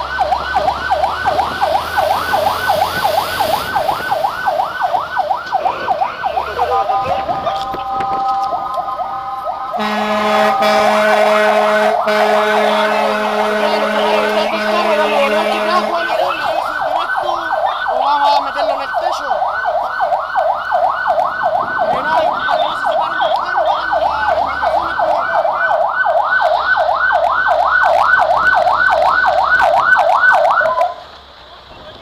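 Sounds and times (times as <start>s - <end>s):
fire engine siren yelping: 0.0s - 32.0s.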